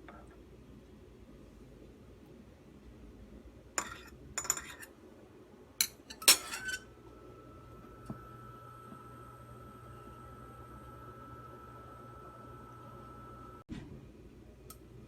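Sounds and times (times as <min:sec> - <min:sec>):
faint high hum: 0:00.0 - 0:15.0
dishes and utensils clinking: 0:03.8 - 0:04.9, 0:05.8 - 0:06.9.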